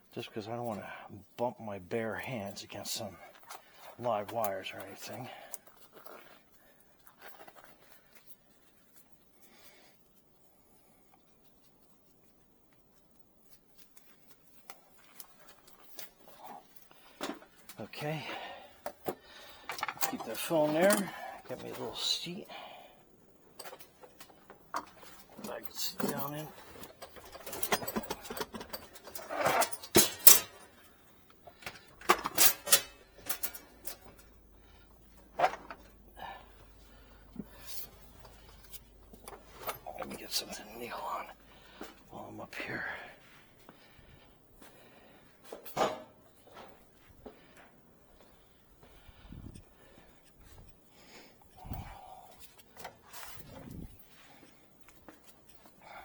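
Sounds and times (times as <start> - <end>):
gloves rustling: 0.0 - 56.0
objects knocking and clattering: 23.6 - 36.7, 45.5 - 47.4.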